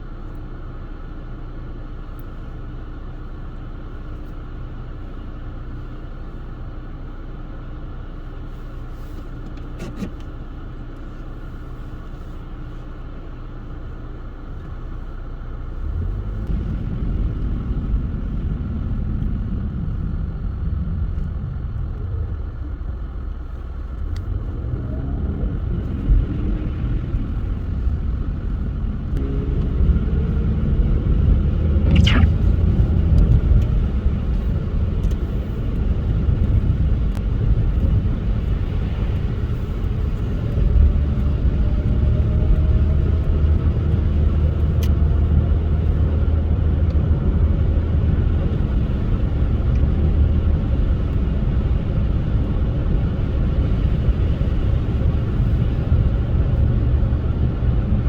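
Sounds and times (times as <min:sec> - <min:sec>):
car tyres and engine rumble: 0:00.0 - 0:58.0
sharp falling sweep: 0:31.8 - 0:32.8.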